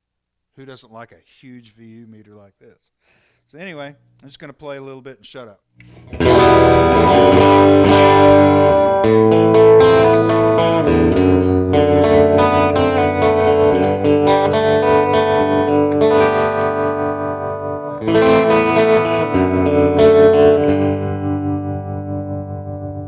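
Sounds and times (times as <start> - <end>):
electric guitar chords ringing: 5.8 - 23.0.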